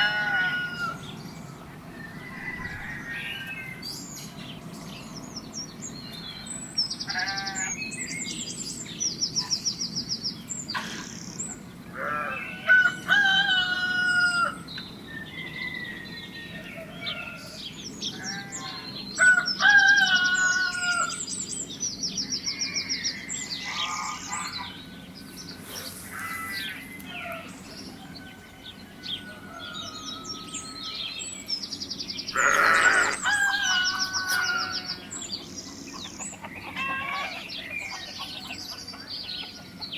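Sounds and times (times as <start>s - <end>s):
rooster crowing: 0.0s - 1.1s, 1.9s - 3.9s, 12.0s - 21.2s, 26.3s - 31.2s, 32.4s - 35.2s
small birds chirping trills: 0.0s - 39.9s
hens clucking: 35.9s - 39.9s.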